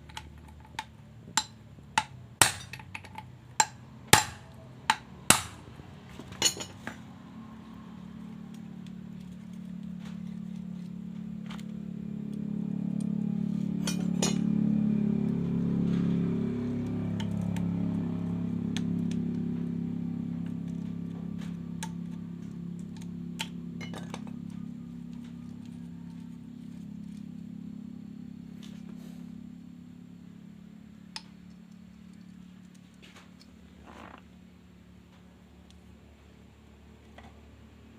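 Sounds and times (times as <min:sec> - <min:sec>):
low steady hum: 0:00.0 - 0:37.9
metal parts and tools clinking: 0:06.2 - 0:07.0, 0:13.8 - 0:14.4.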